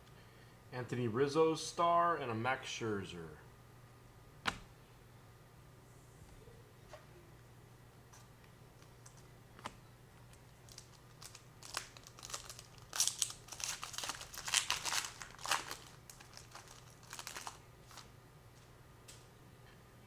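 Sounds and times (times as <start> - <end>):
crackling rustles: 8.1 - 19.3
foil wrapper crinkling: 10.2 - 18.2.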